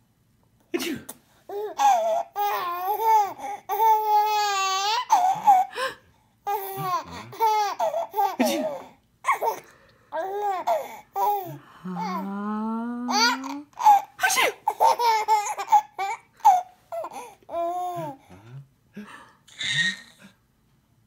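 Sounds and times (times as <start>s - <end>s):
lower voice rising in pitch: 11.8s - 13.6s.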